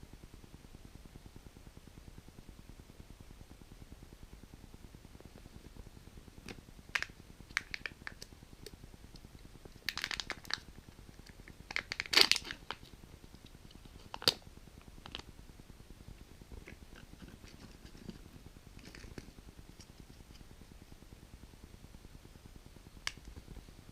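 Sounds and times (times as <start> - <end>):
foil wrapper crinkling and tearing: 9.9 - 10.6, 11.7 - 12.8.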